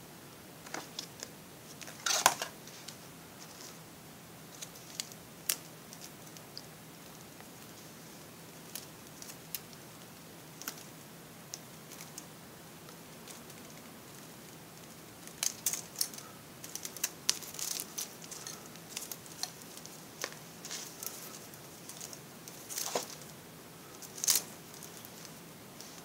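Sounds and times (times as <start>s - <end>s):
low hiss: 0.0s - 26.0s
packaging crinkling: 13.2s - 23.3s.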